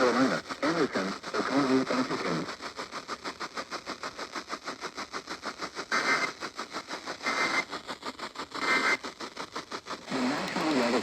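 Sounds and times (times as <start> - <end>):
radio static pulsing buzz: 10.0 - 11.0.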